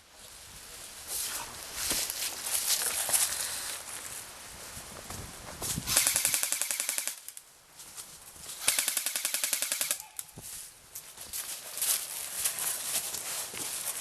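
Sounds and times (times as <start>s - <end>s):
airsoft gun full-auto bursts: 5.9s - 7.4s, 8.6s - 10.0s.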